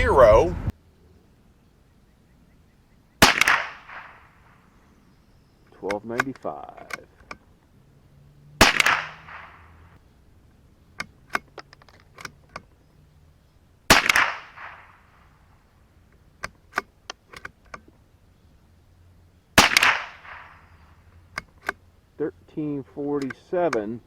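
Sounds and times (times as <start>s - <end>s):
rifle shots with echo: 3.2s - 4.7s, 8.6s - 9.8s, 13.9s - 15.2s, 19.6s - 20.7s
rifle bolt clicks: 5.8s - 7.4s, 8.6s - 9.5s, 11.0s - 12.7s.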